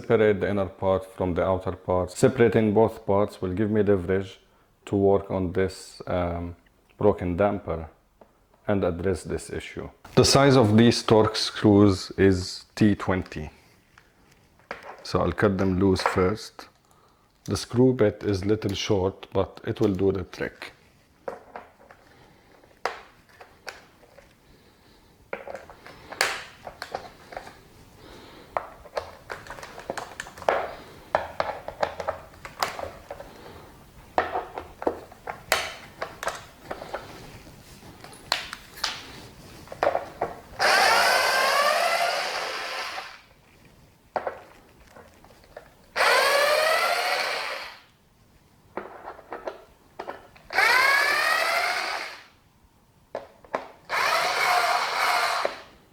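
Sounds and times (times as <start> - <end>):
clicks and scraping of parts: 25.3 - 27.6, 28.5 - 33.4, 34.2 - 37.3, 48.8 - 52.3, 53.2 - 55.7
power drill whining: 40.6 - 43.3, 46.0 - 47.9, 50.5 - 52.4, 53.9 - 55.8.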